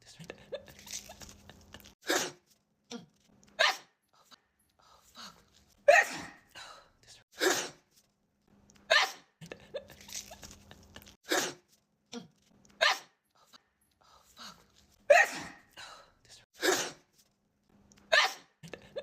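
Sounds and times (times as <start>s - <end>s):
woman sneezing: 5.9s - 6.4s, 7.4s - 7.8s, 15.1s - 15.6s, 16.6s - 17.0s, 18.1s - 18.5s
breaths: 6.4s - 7.2s, 13.4s - 14.8s, 15.7s - 16.4s.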